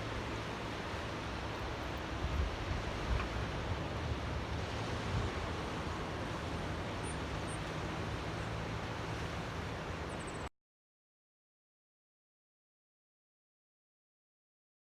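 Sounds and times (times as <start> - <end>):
small waves lapping: 0.0 - 10.4.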